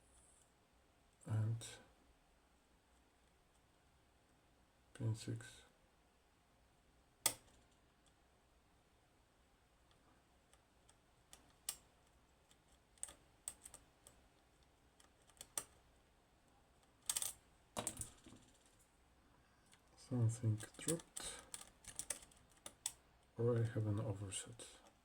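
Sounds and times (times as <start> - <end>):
lock pick clicks: 17.0 - 18.1.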